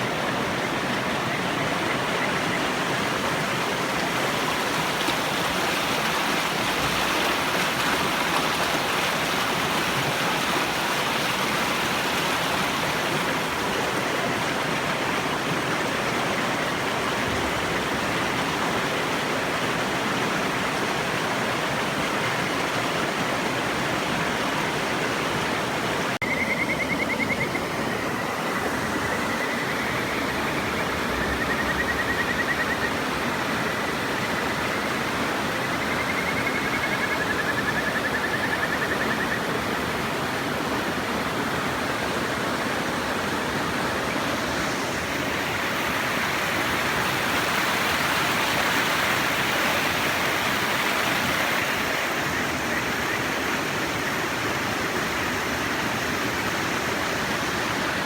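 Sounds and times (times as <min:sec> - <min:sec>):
river water rushing: 0:00.0 - 0:58.0
frog trilling: 0:26.2 - 0:27.8.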